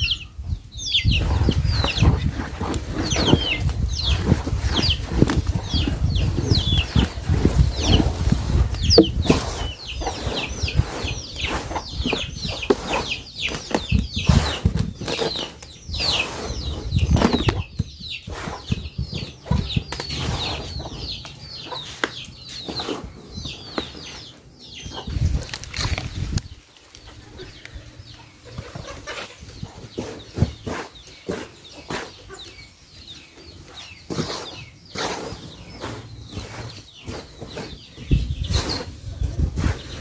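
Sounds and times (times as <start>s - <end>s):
small birds chirping: 0.0s - 40.0s
stick stirring damp soil: 1.2s - 17.4s, 18.2s - 23.2s, 29.2s - 32.3s, 33.6s - 40.0s.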